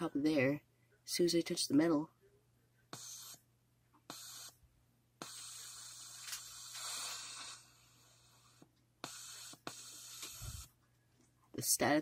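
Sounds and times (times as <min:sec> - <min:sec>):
low mains hum: 0:00.0 - 0:05.2, 0:10.4 - 0:12.0
static hiss bursts with clicks: 0:06.0 - 0:07.5, 0:08.6 - 0:10.7.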